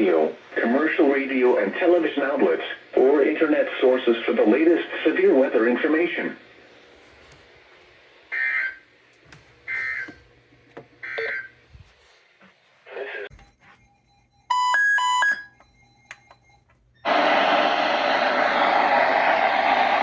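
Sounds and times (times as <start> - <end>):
electronic beeps: 13.4 - 16.6.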